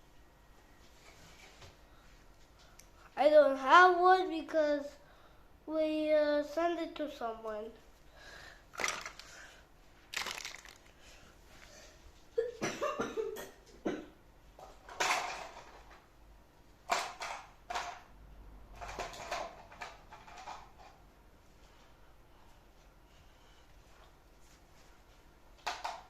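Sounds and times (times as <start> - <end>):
small objects rustling and clattering: 8.7 - 9.5, 10.1 - 11.2, 14.6 - 16.1, 18.8 - 21.0.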